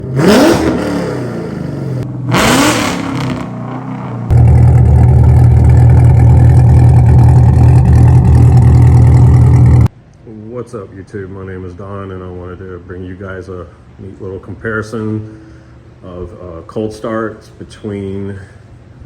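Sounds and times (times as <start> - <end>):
engine exhaust revving and idling: 0.0 - 9.9.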